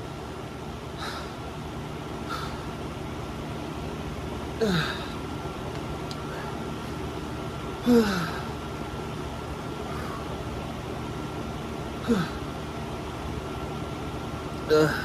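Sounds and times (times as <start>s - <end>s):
steady background hum: 0.0s - 15.0s
person groaning in pain: 4.6s - 5.2s, 7.8s - 8.5s, 12.0s - 12.4s, 14.7s - 15.0s.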